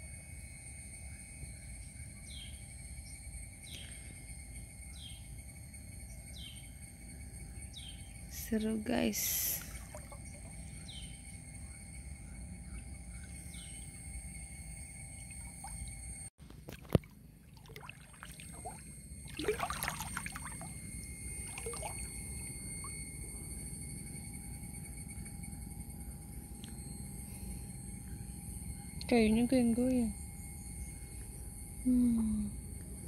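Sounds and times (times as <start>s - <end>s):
outdoor background noise: 0.0s - 33.0s
water splashing and trickling: 9.3s - 10.8s, 15.2s - 23.0s.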